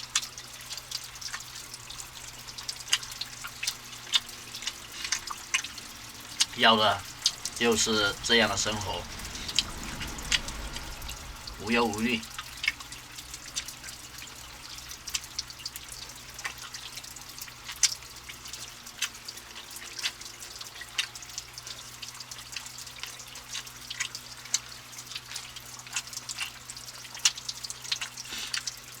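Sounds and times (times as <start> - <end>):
steady low hum: 0.0 - 17.8
water dripping: 0.0 - 29.0.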